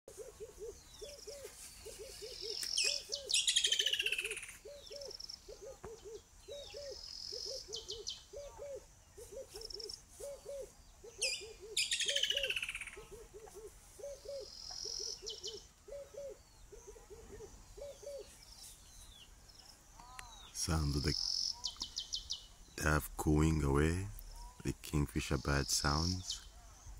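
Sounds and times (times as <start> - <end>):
dove cooing: 0.1 - 18.4
small birds chirping: 0.1 - 26.9.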